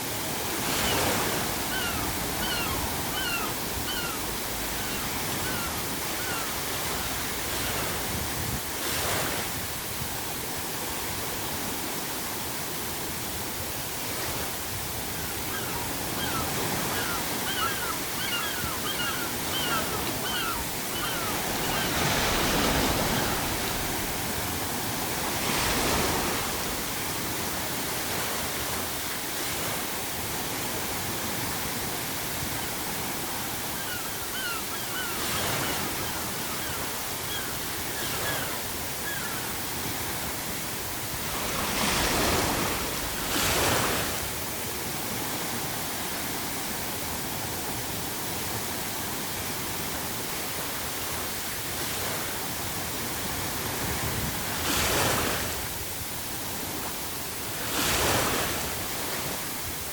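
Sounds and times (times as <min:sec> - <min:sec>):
ocean waves breaking: 0:00.0 - 0:59.9
seagulls crying: 0:00.7 - 0:07.8, 0:14.9 - 0:24.9, 0:33.4 - 0:40.1.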